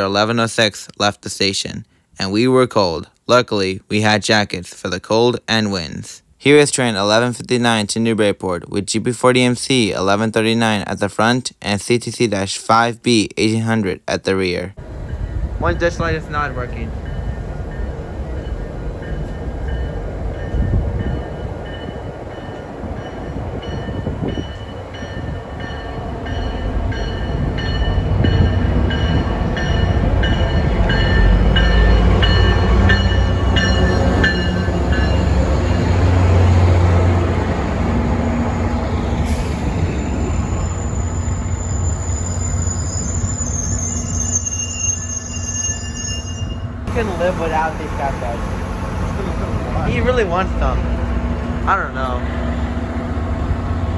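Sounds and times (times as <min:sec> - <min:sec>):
diesel locomotive engine rumble: 0:14.8 - 0:53.9
high thin wheel squeal: 0:39.4 - 0:47.5.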